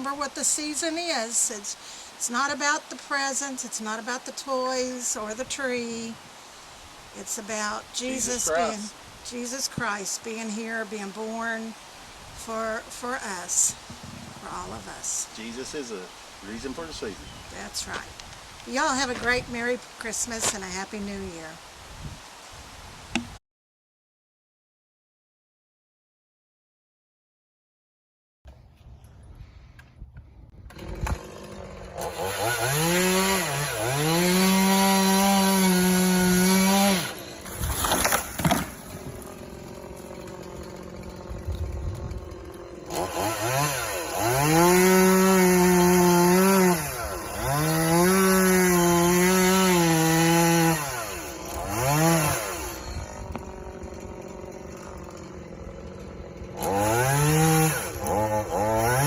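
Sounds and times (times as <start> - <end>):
chainsaw revving and idling: 7.2 - 11.8, 12.4 - 13.8, 14.4 - 18.0, 18.7 - 20.9, 30.7 - 59.0.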